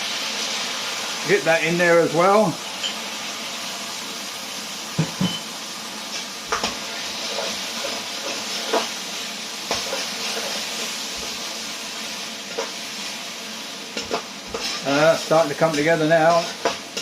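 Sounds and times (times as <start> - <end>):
meat sizzling in a wok: 0.0 - 17.0
utensil scraping a wok: 6.0 - 17.0.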